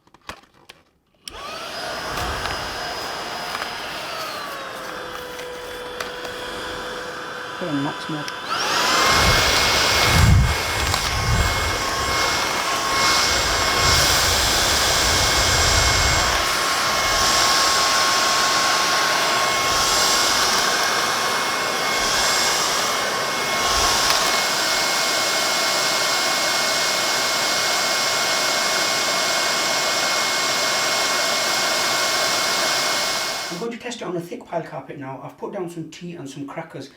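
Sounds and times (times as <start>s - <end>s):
vacuum cleaner running: 1.2s - 33.7s
low bumps: 8.8s - 18.1s.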